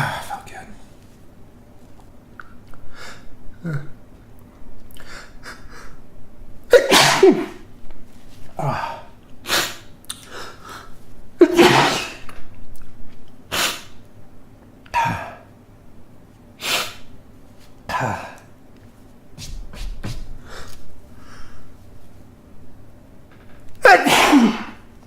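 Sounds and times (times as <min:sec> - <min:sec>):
man sneezing: 0:06.7 - 0:07.6, 0:11.4 - 0:12.3, 0:14.9 - 0:15.5, 0:17.9 - 0:18.5, 0:23.8 - 0:24.8.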